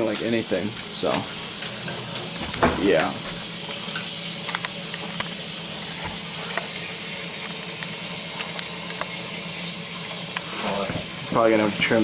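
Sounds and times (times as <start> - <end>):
small crackles and clicks: 3.9 - 5.4, 6.0 - 9.2.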